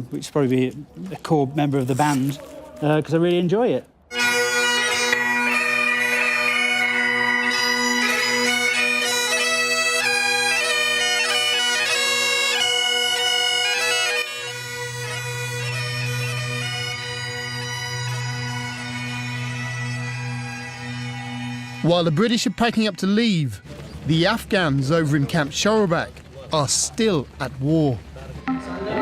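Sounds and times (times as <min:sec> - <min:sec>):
bagpipe drones: 0:04.1 - 0:23.9, 0:28.4 - 0:29.0
bagpipe melody: 0:04.1 - 0:24.6.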